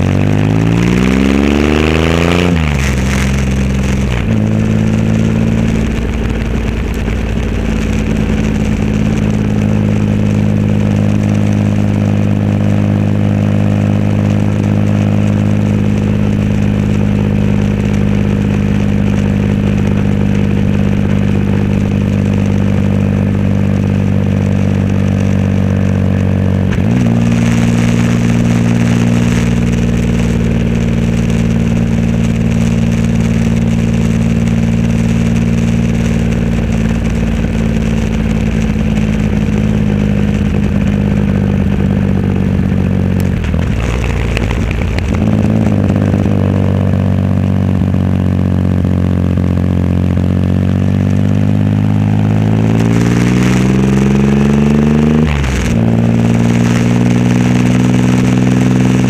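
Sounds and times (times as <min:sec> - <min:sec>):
motorcycle engine cruising: 0:00.0 - 0:59.0.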